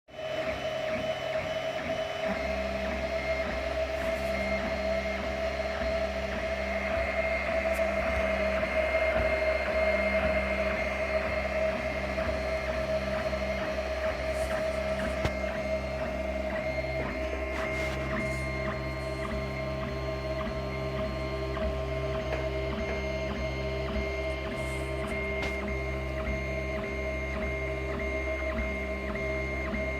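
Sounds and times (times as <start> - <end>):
printer motors and fans whining: 0.1 - 29.9
pitched stepper motor moves: 2.4 - 20.2.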